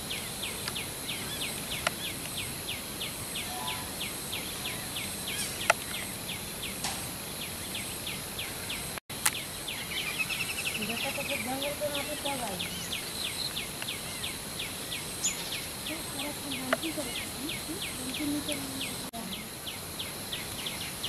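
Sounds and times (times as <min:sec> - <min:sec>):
insects chirping: 0:00.0 - 0:21.0
high-pitched insect drone: 0:00.1 - 0:05.6.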